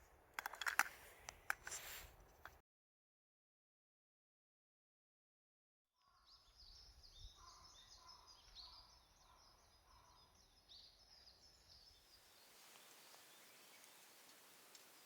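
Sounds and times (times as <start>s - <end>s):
bird high chirps: 6.0s - 15.0s
faint steady hiss: 11.2s - 15.0s.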